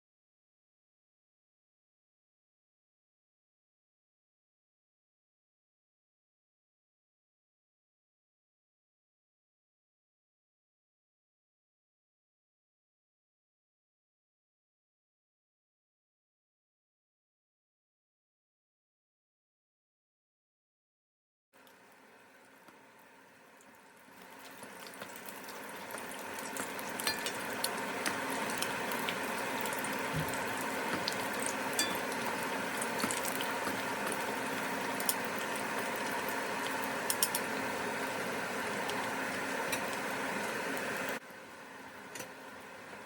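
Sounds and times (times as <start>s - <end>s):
food deep-frying in oil: 21.6s - 43.0s.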